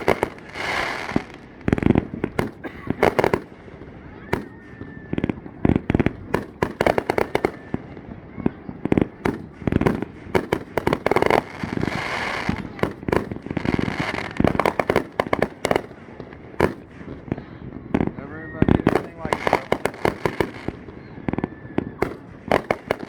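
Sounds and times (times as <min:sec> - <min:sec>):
firework whistle: 0:00.0 - 0:08.1, 0:18.2 - 0:23.0
fireworks bangs and crackles: 0:00.0 - 0:23.0.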